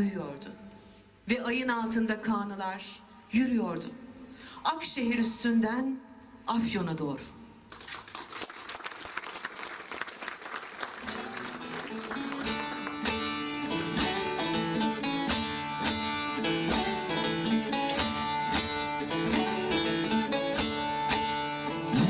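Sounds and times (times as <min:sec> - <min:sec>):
applause: 0:07.7 - 0:14.2
strummed string instrument: 0:11.0 - 0:22.0.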